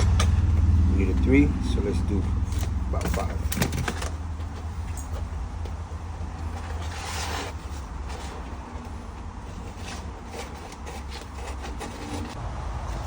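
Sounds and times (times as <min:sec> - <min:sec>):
film rubbing and scraping: 0:06.2 - 0:12.4.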